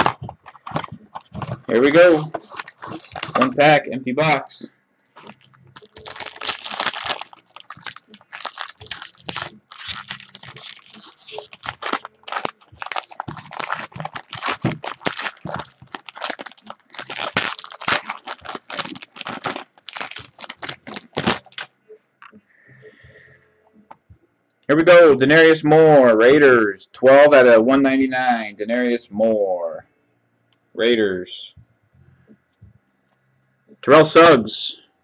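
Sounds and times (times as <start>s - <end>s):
cards rustling: 0.0s - 3.6s, 5.1s - 21.7s
wrapper crinkling and tearing: 0.0s - 3.6s, 5.2s - 21.7s.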